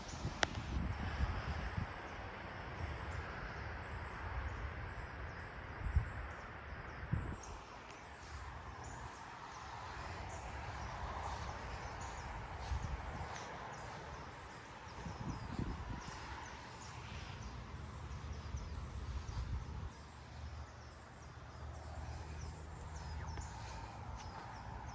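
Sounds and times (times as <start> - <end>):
wind buffeting microphone: 0.0 - 4.9, 5.7 - 7.6, 8.2 - 20.1.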